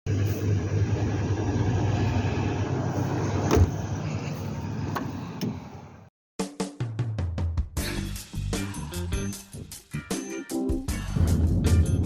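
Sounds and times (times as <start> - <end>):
car rumbling on the move: 0.1 - 6.1
sharp thump: 3.5 - 3.8
music with drums: 6.4 - 12.0.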